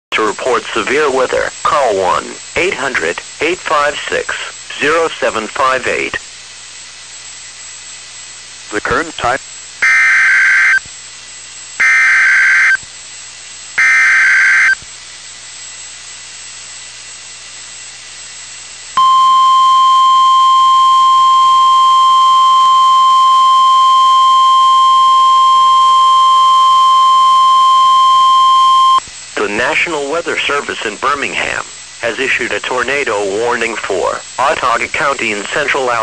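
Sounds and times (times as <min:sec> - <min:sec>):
radio hiss: 0:00.1 - 0:06.4, 0:08.6 - 0:10.9, 0:20.1 - 0:36.0
buzzy digital header bursts: 0:08.8 - 0:10.8, 0:11.8 - 0:12.8, 0:13.8 - 0:14.8
steady warning alarm tone: 0:09.8 - 0:10.9, 0:11.8 - 0:12.8, 0:13.8 - 0:14.8, 0:19.0 - 0:29.0.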